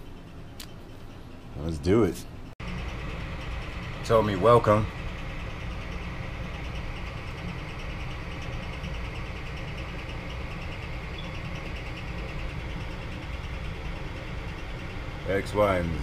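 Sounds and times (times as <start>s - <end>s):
printer cooling fans humming: 0.0s - 16.0s.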